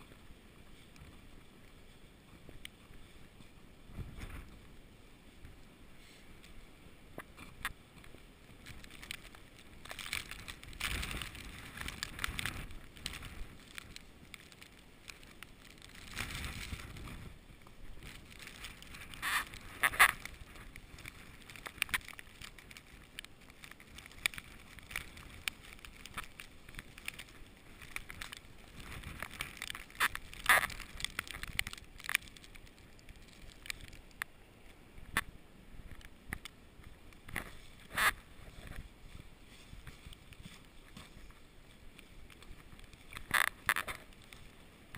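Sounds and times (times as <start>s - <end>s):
snowstorm wind gusts: 0.0s - 34.0s
sharp crackles and clicks: 0.0s - 44.9s.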